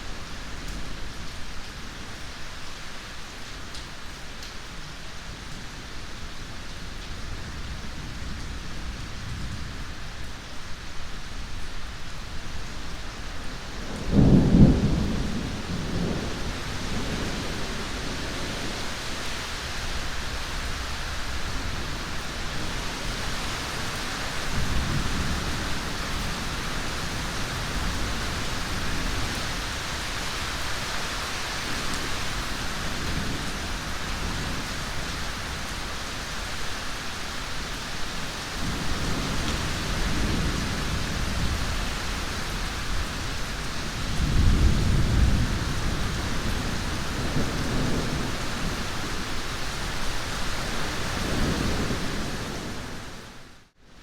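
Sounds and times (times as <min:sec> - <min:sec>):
heavy rain: 0:00.0 - 0:54.0
rolling thunder: 0:13.8 - 0:19.0, 0:38.6 - 0:49.3.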